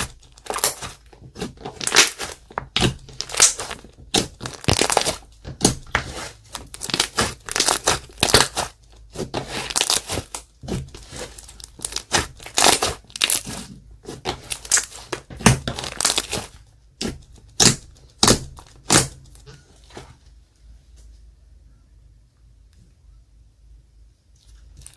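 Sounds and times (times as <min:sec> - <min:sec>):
slime squishing and popping: 0:00.0 - 0:19.4.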